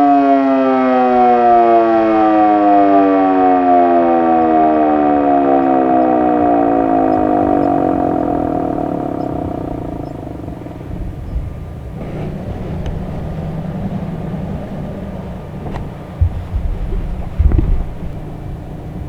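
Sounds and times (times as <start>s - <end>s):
siren winding down: 0.0s - 16.3s
low steady rumble: 4.4s - 19.0s
knocks: 15.6s - 18.3s.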